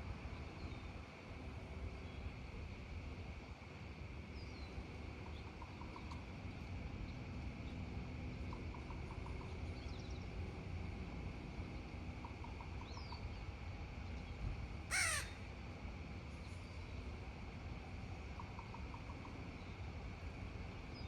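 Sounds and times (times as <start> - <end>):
loud bird call: 14.9 - 15.4.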